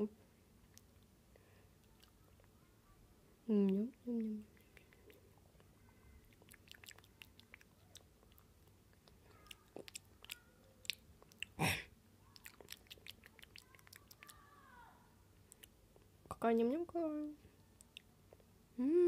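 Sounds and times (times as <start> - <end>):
chewing and crunching food: 0.7 - 2.6, 3.6 - 11.6, 12.3 - 14.5, 15.4 - 16.1.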